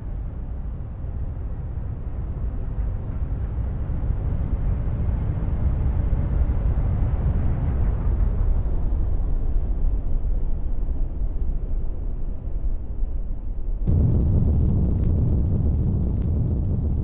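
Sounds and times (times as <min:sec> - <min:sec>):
aircraft engine rumble: 0:13.9 - 0:17.0
faint high whine: 0:13.9 - 0:17.0.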